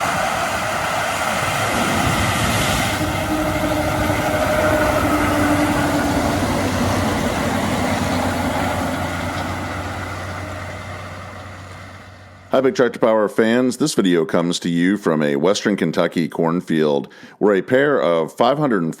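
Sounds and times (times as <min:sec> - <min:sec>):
combine harvester machinery drone: 0:00.0 - 0:12.6.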